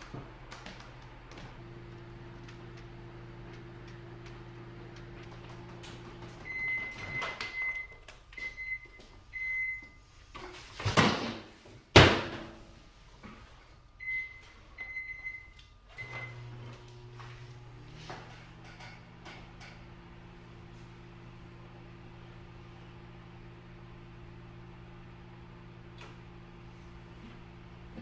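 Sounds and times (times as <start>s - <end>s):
microwave oven humming: 0.0s - 10.6s, 11.9s - 28.0s
microwave beeps: 6.3s - 10.1s, 14.0s - 16.8s
keypad beeps: 6.4s - 9.8s.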